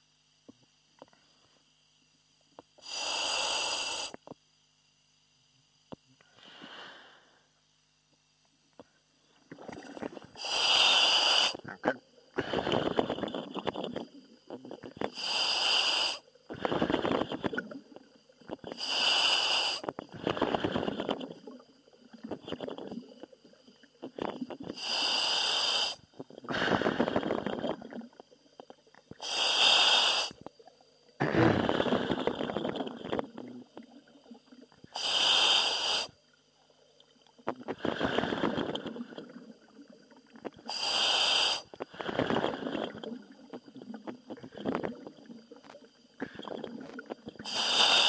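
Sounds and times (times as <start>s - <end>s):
bubbling exhale: 2.8s - 4.2s, 9.5s - 28.4s, 29.1s - 36.2s, 37.4s - 48.0s
diver breathing through helmet valve: 2.8s - 4.2s, 6.3s - 7.5s, 10.3s - 11.6s, 12.4s - 13.9s, 15.0s - 17.5s, 18.6s - 21.3s, 24.7s - 27.7s, 29.2s - 30.4s, 31.2s - 32.9s, 34.9s - 36.2s, 37.7s - 39.2s, 40.6s - 43.1s, 47.4s - 48.0s.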